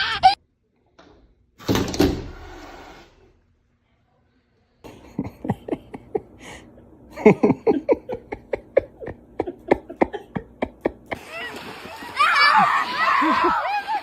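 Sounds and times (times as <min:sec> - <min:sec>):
laughter in quick bursts: 0:04.9 - 0:06.4, 0:07.2 - 0:12.2.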